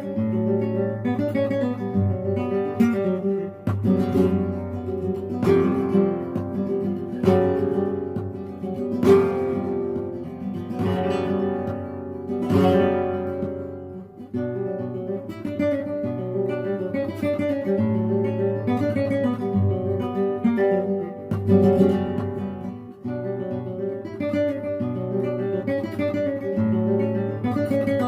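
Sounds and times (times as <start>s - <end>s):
acoustic guitar music: 0.0s - 28.0s.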